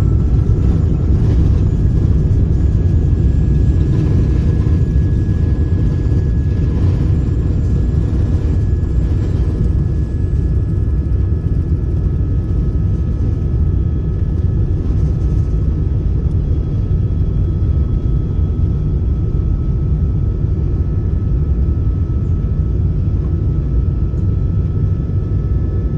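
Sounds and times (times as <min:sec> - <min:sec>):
jet engines roaring: 0:00.0 - 0:18.7.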